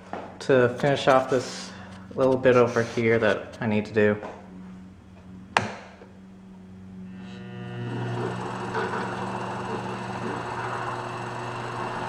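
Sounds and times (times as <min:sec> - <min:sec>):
lathe motor humming: 0:06.2 - 0:12.0.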